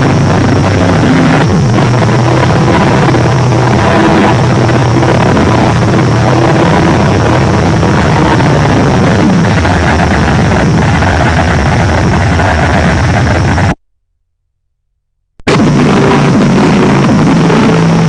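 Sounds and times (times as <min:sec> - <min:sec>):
loud rumbling drone with hiss: 0:00.0 - 0:13.8, 0:15.4 - 0:18.0.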